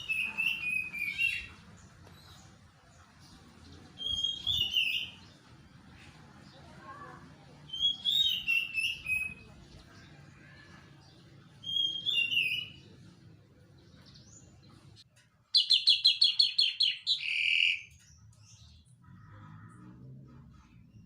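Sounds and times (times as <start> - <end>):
songbird singing: 0.0 - 6.9, 7.6 - 21.0.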